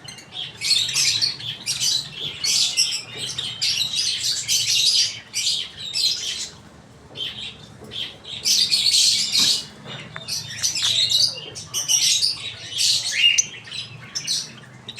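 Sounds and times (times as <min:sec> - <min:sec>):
lovebirds chirping and squawking: 0:00.0 - 0:14.9.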